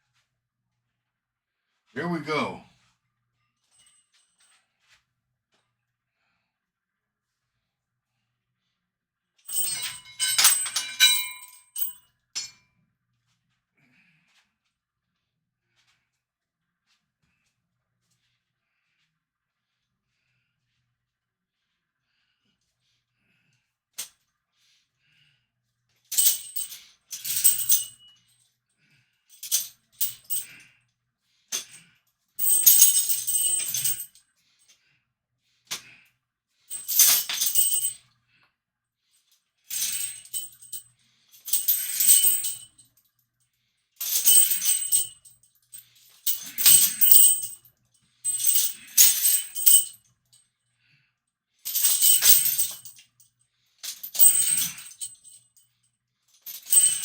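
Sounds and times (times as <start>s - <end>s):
chains jangling on weight bar: 9.5s - 12.6s, 26.1s - 28.3s, 29.3s - 30.7s, 31.6s - 34.2s, 36.7s - 38.1s, 39.7s - 42.9s, 44.0s - 50.0s, 51.7s - 53.2s, 53.8s - 55.8s, 56.4s - 57.0s.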